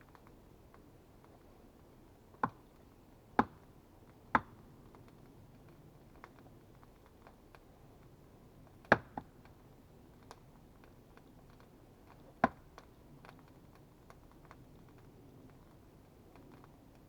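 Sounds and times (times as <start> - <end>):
faint clicks and crackles: 0.0 - 17.0.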